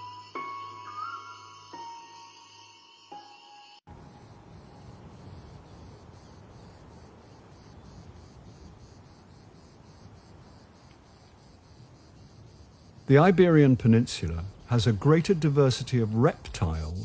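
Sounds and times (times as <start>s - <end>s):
soft music: 0.0s - 4.0s
insect chirping: 0.0s - 17.0s.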